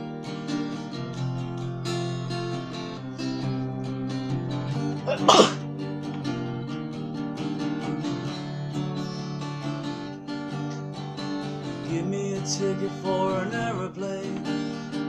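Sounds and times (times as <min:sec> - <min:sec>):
acoustic guitar strumming: 0:00.0 - 0:15.0
person sneezing: 0:05.1 - 0:05.6.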